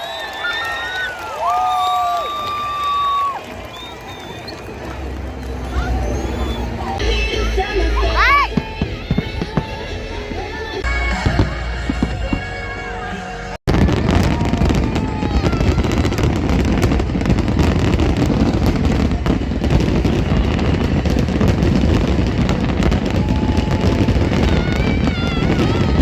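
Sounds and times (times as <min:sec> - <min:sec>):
music: 0:07.0 - 0:14.0
fireworks crackling: 0:08.1 - 0:12.7, 0:13.7 - 0:26.0.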